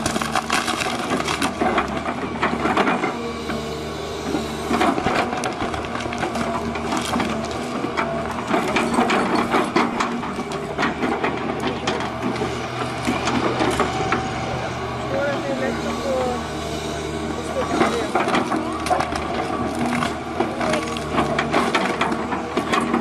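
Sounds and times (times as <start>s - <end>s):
wood cracking and crunching: 0.0s - 3.0s, 4.7s - 14.2s, 17.6s - 23.0s
heavy machine engine running: 0.0s - 23.0s.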